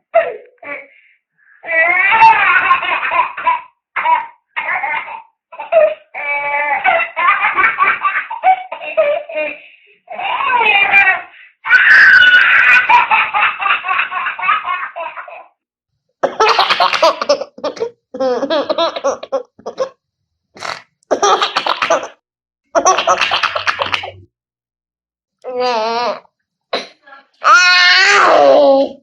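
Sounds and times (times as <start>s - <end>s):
baby laughing: 1.6s - 11.3s, 12.2s - 15.5s, 16.2s - 20.0s, 20.6s - 22.2s, 22.8s - 24.2s.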